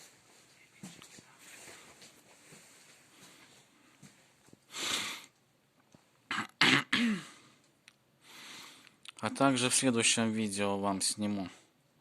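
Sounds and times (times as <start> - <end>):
person coughing: 6.3 - 7.4
breathy exhale: 8.2 - 8.9.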